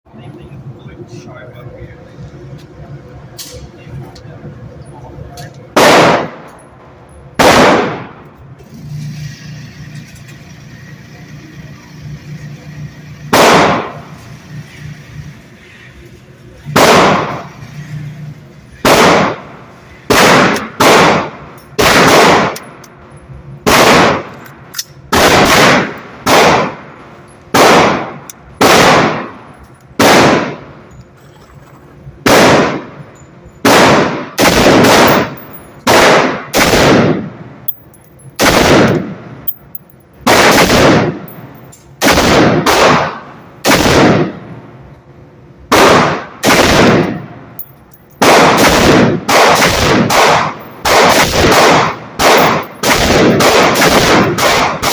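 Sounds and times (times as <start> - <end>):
gunshots with echo: 5.7 - 6.5, 7.4 - 8.2, 13.3 - 14.1, 16.7 - 17.5, 18.8 - 22.6, 23.6 - 24.3, 25.1 - 29.4, 30.0 - 30.8, 32.2 - 33.0, 33.6 - 37.4, 38.4 - 39.3, 40.2 - 41.3, 42.0 - 44.5, 45.7 - 47.3, 48.2 - 54.9.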